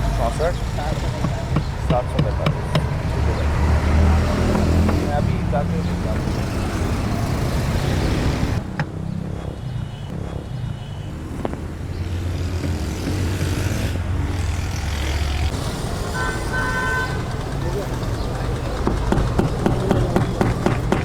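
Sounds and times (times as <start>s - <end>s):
street traffic: 0.0s - 21.0s
vehicle engine rumble: 0.0s - 21.0s.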